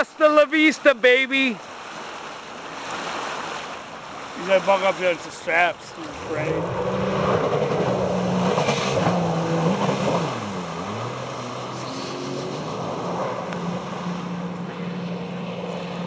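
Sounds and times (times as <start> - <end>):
jet ski engine running hard: 4.2 - 16.0.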